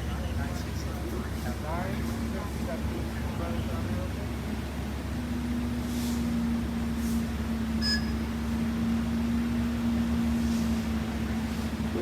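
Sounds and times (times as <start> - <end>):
vehicle engine idling: 0.0 - 12.0
brief high beep: 7.8 - 8.2.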